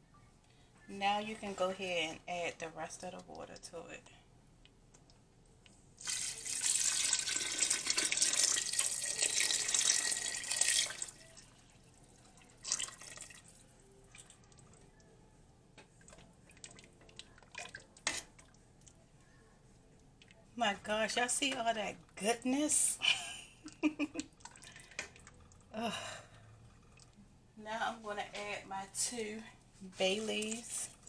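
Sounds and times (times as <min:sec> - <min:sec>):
water pouring into a pot: 0:06.0 - 0:14.8, 0:16.0 - 0:18.6, 0:24.3 - 0:25.7.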